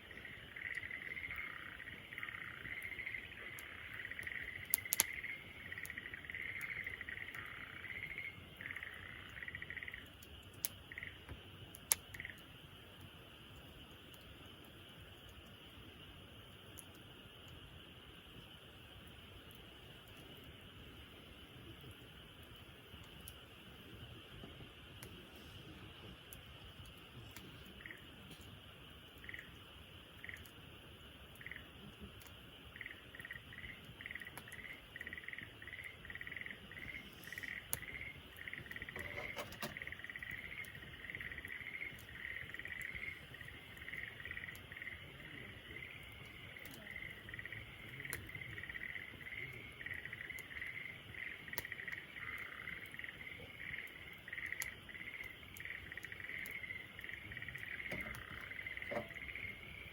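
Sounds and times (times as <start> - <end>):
animals chirping rhythmically: 0.0 - 11.2, 11.9 - 12.5, 26.8 - 28.3, 28.9 - 59.9
campfire crackling: 0.0 - 59.9.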